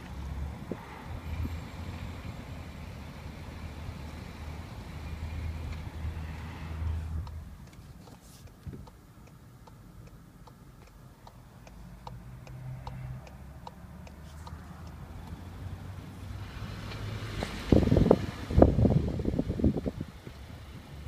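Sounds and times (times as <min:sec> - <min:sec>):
car engine humming: 0:00.0 - 0:21.0
even ticking: 0:08.4 - 0:15.5.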